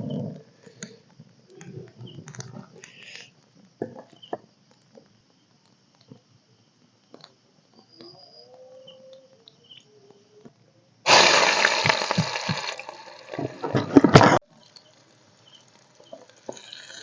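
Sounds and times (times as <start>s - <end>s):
water pouring and splashing: 11.1s - 14.4s.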